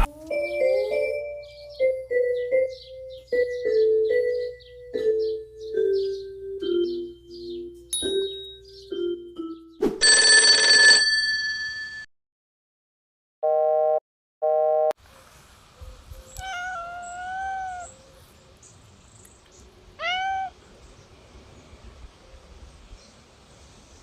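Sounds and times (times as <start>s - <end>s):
bell-like chime: 7.9s - 8.8s
cat meowing: 16.3s - 18.0s, 20.0s - 20.6s.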